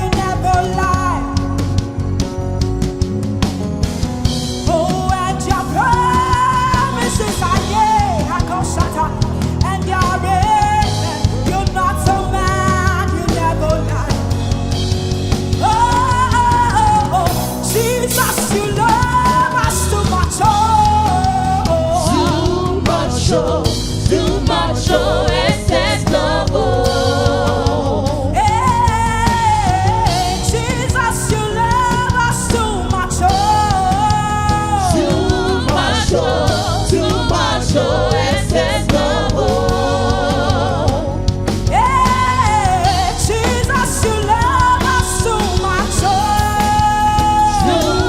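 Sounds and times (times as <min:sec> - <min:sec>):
band with bass and drums: 0:00.0 - 0:48.0
lead voice singing: 0:04.6 - 0:14.6, 0:15.3 - 0:48.0
backing singers: 0:15.6 - 0:48.0.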